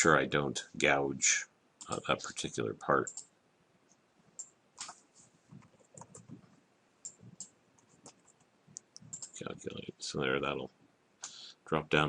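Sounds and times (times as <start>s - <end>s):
mouse and keyboard clicks: 7.0s - 9.4s.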